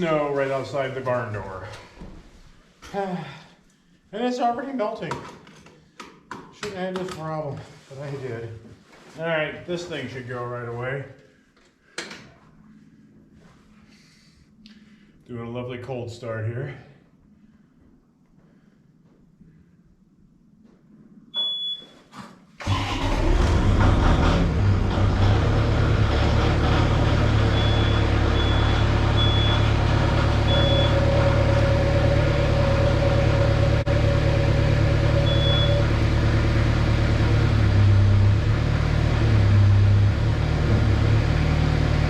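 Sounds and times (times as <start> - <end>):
engine cranking and running: 22.6 - 42.0
short high beeps: 35.3 - 35.8.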